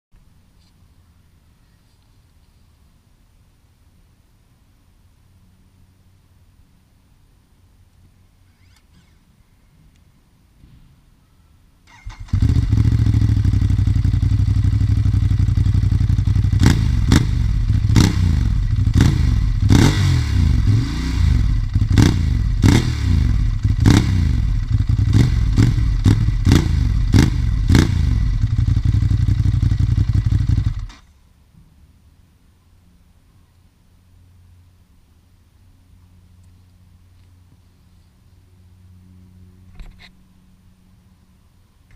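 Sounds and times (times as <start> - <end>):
motorcycle engine starting and idling: 11.8 - 31.1
motorcycle engine revving: 11.9 - 31.0.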